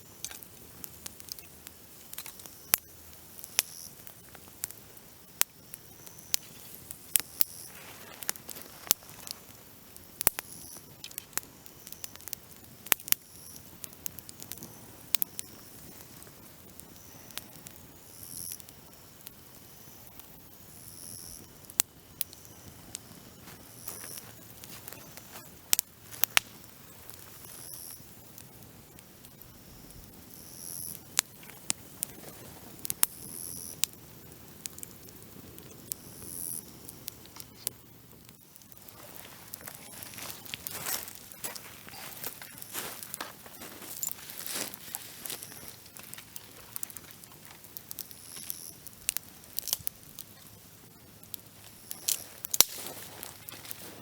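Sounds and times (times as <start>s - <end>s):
campfire branches crackling: 0.0s - 54.0s
soft steady hiss: 0.0s - 54.0s.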